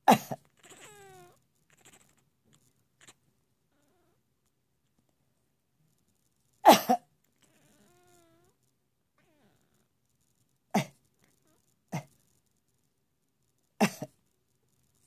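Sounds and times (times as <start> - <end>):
woman coughing: 0.0 - 0.4, 6.7 - 7.0, 10.8 - 11.0, 13.8 - 14.1
cat meowing: 0.6 - 4.2, 7.4 - 8.6.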